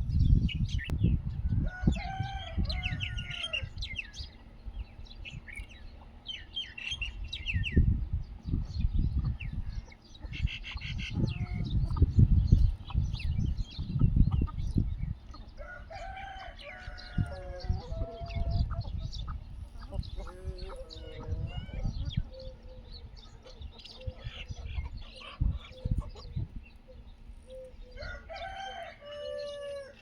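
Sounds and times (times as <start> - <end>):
chickens chirping and cheeping: 0.0 - 30.0
roosters crowing: 1.4 - 4.7, 9.4 - 12.0, 14.6 - 30.0.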